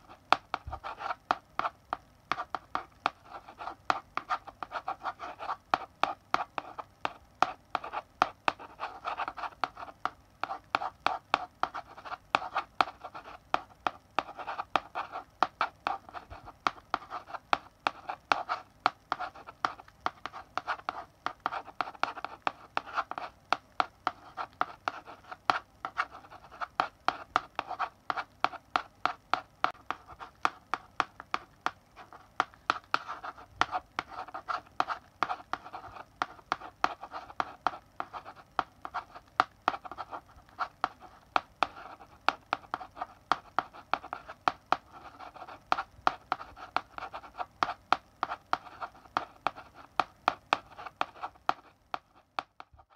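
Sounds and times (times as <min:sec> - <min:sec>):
chalk tapping and scratching: 0:00.0 - 0:52.9.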